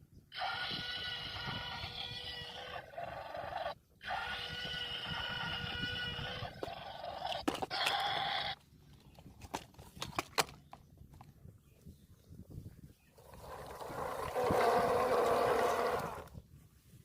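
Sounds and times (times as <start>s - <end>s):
drawn-out animal calls: 0.4s - 8.6s, 13.3s - 16.3s.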